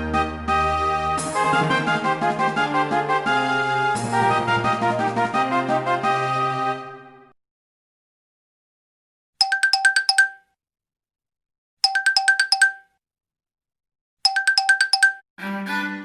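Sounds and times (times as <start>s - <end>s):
phone ringtone trill of beeps: 9.4s - 10.4s, 11.8s - 12.8s, 14.3s - 15.2s.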